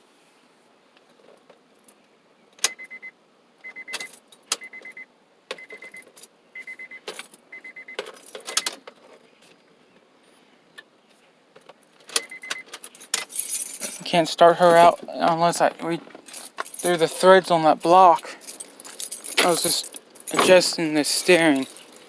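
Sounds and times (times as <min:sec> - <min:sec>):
car warning chime beeping: 0:02.7 - 0:08.6, 0:12.2 - 0:12.7
keys jangling and clicking: 0:03.8 - 0:04.9, 0:05.6 - 0:08.8, 0:12.0 - 0:22.0.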